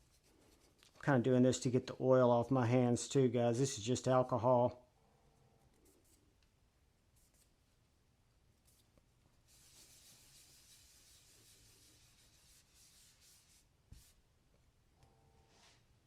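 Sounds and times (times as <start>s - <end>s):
faint rubbing and wiping: 0.0s - 1.0s, 5.4s - 6.4s, 7.0s - 7.9s, 8.5s - 14.6s, 15.4s - 16.0s.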